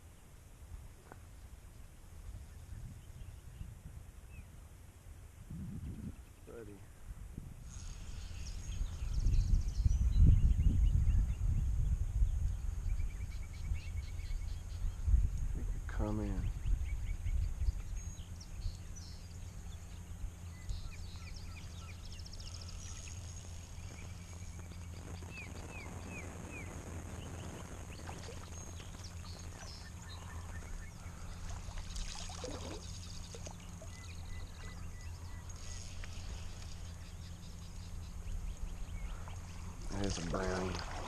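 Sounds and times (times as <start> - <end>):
small birds chirping: 5.4 - 41.0
river water running: 27.4 - 41.0.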